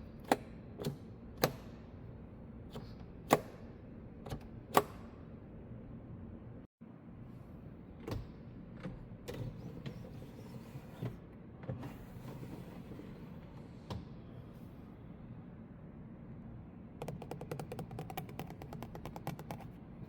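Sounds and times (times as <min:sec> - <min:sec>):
sharp clicks and knocks: 0:17.0 - 0:19.8.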